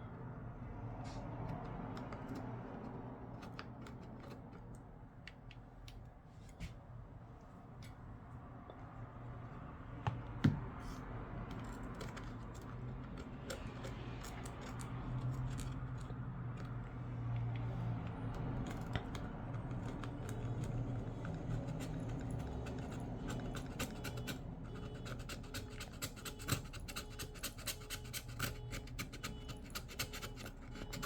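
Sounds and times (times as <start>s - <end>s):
hand tools clicking and scraping: 1.4s - 5.6s, 11.4s - 31.0s.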